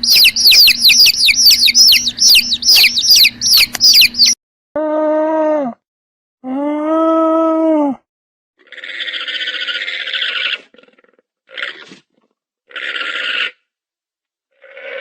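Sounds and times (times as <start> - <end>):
farm animal harsh raspy call: 8.6 - 12.1, 12.7 - 13.7, 14.6 - 15.0.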